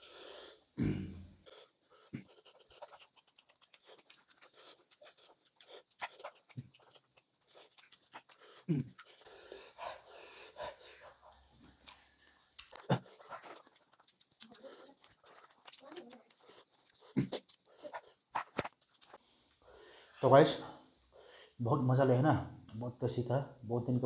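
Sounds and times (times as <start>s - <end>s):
person breathing: 0.0s - 0.7s, 8.3s - 12.5s, 19.2s - 20.2s, 21.1s - 21.6s
wet chewing and lip smacks: 1.5s - 19.6s.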